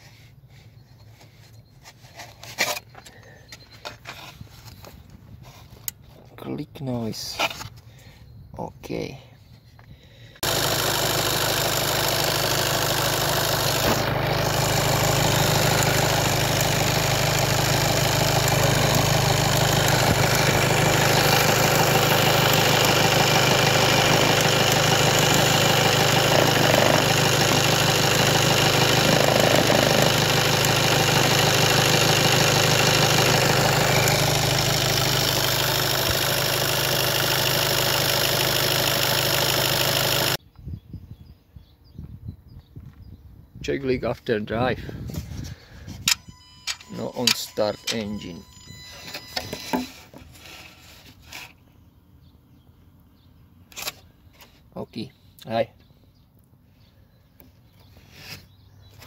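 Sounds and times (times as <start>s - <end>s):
car engine idling: 10.4s - 40.4s.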